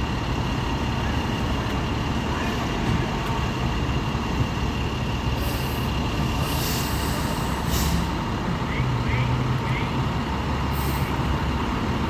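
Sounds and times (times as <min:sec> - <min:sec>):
diesel truck engine rumbling: 0:00.0 - 0:12.0
air brakes hissing: 0:05.3 - 0:08.2, 0:10.7 - 0:11.2.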